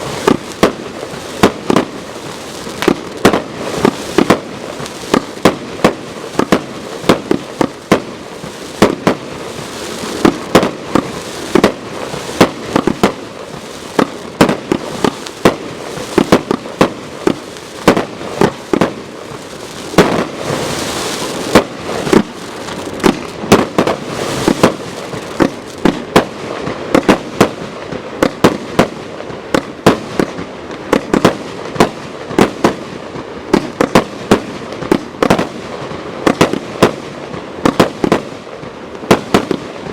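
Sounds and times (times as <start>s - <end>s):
fireworks battery firing: 0.0s - 32.8s.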